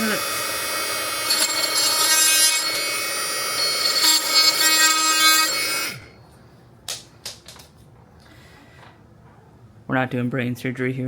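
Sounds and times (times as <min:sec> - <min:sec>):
power tool whining: 0:00.0 - 0:06.1.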